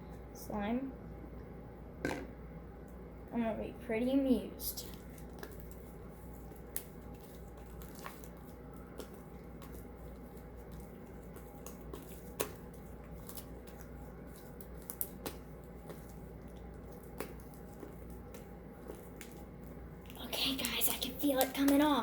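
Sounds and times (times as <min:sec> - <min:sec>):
slime squishing: 0:04.6 - 0:22.0
slime crackling pops: 0:10.6 - 0:22.0.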